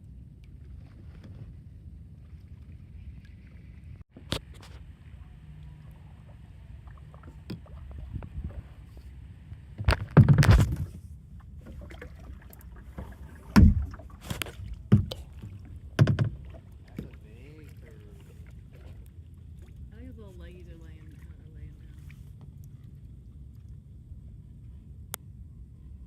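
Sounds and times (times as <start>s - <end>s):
steady low rumble: 0.0s - 9.9s, 10.7s - 26.0s
kayak paddle splashing: 0.4s - 23.9s.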